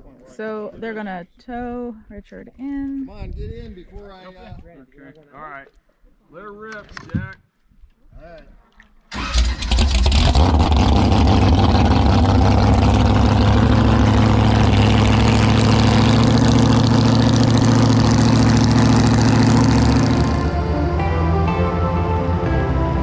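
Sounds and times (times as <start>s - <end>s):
motorboat engine running: 9.2s - 21.5s.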